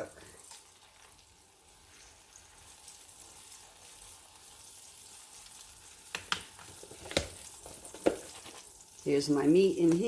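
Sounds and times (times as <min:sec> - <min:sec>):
tortilla sizzling in oil: 0:00.0 - 0:10.0.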